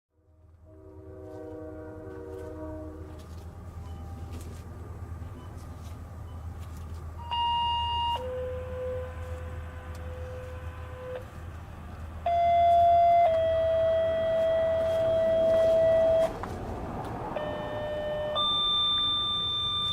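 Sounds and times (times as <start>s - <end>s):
two-tone paging tones: 7.2s - 8.4s, 12.3s - 16.3s, 17.4s - 19.9s.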